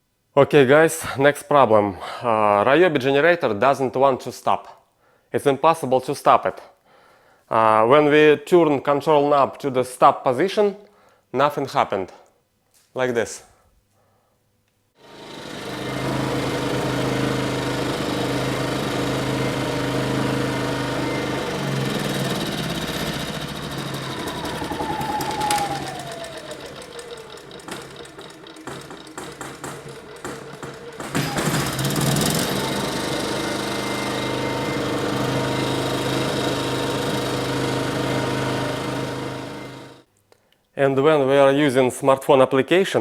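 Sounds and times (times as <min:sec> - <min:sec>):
generator engine running: 0:15.0 - 0:40.0.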